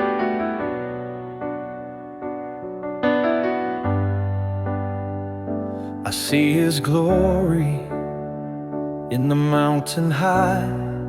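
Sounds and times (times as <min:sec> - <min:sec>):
keyboard piano chords: 0:00.0 - 0:11.0.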